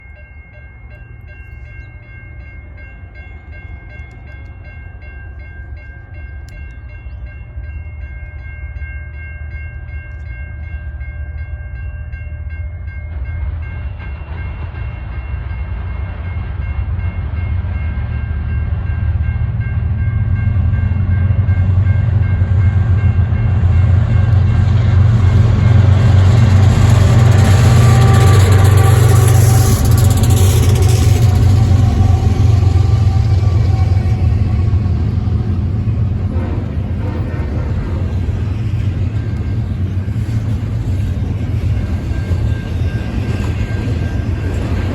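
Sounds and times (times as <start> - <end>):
rail noise: 0.0 - 44.9
locomotive engine rumble: 0.9 - 44.9
train horn chord: 25.8 - 37.7.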